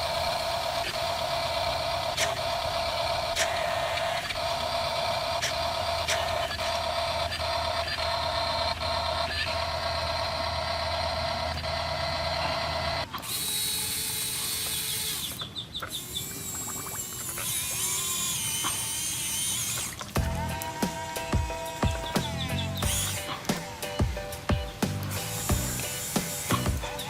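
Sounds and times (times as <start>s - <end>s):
toy electric motor whirring: 0.0s - 27.0s
high hiss: 20.2s - 27.0s.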